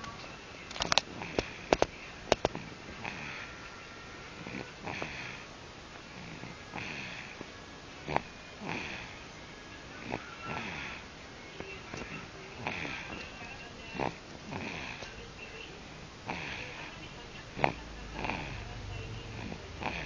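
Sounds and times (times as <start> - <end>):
child snoring: 2.4 - 5.5, 6.1 - 9.3, 10.0 - 11.1, 11.9 - 13.2, 14.0 - 15.1, 16.2 - 20.0.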